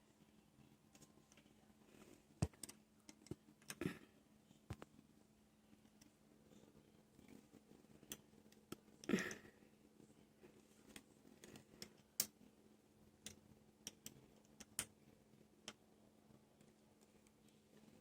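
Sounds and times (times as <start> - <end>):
small parts clicking: 13.2 - 14.9.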